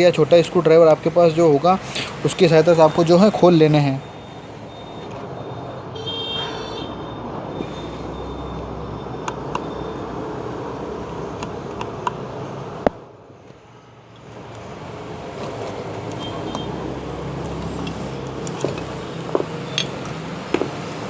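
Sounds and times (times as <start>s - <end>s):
street traffic hum: 0.0s - 21.0s
horn-like toot: 6.0s - 7.0s.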